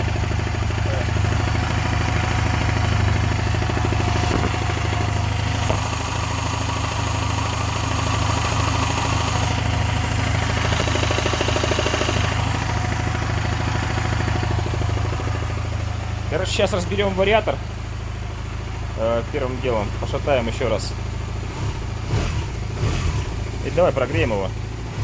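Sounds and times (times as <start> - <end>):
motorcycle engine idling: 0.0 - 25.0
mechanical clatter: 10.3 - 12.4.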